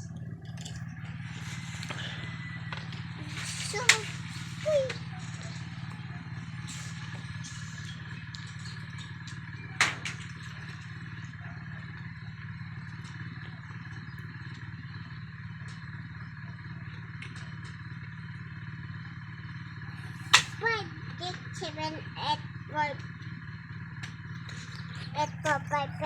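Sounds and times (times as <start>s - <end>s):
low mechanical hum: 0.0s - 26.0s
sharp crack: 20.3s - 20.6s.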